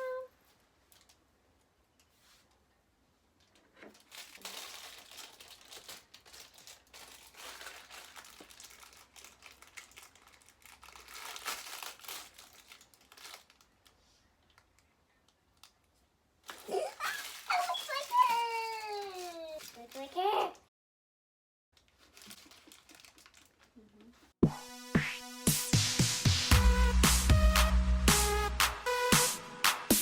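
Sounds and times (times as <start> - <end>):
plastic and foil wrapping crinkling: 0.4 - 1.3, 3.4 - 20.6, 21.8 - 24.4.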